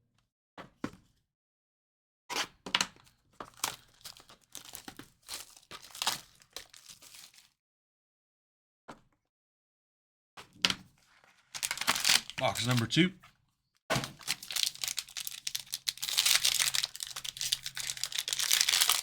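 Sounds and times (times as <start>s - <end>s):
plastic wrapping tearing and crinkling: 3.6s - 7.5s, 11.6s - 12.8s, 14.2s - 19.0s.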